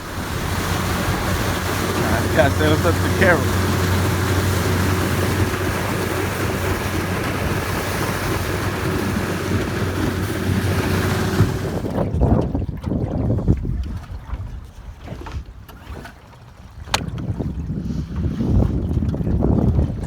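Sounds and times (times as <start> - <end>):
motor humming: 0.0 - 11.9
wind buffeting microphone: 0.0 - 20.0.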